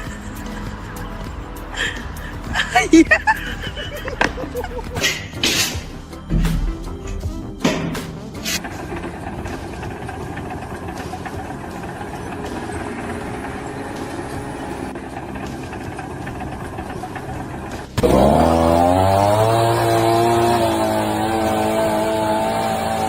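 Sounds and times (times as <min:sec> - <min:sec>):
engine running: 0:00.0 - 0:23.0
motor speeding up: 0:08.6 - 0:23.0.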